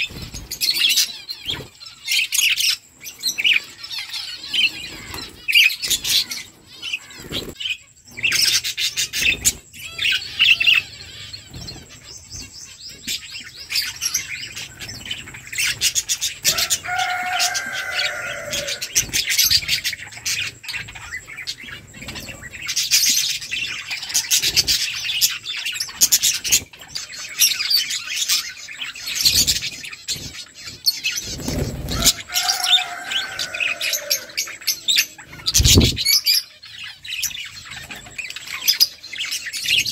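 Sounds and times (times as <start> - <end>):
budgerigars chirping: 0.0 - 39.9
low falling bird call: 16.6 - 19.0, 31.6 - 36.4.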